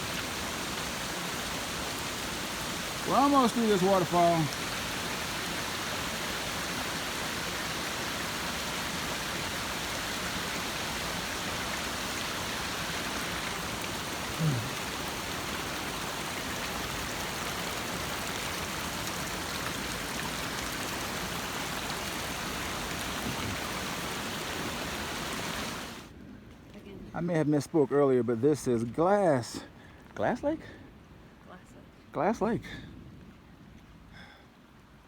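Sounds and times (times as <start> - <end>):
waterfall rushing over rock: 0.0 - 26.1
falling rain: 0.0 - 35.0.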